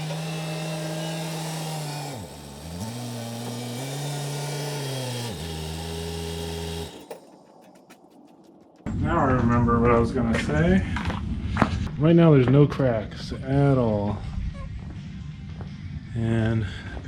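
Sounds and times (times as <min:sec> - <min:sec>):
backhoe engine droning: 0:00.0 - 0:07.8.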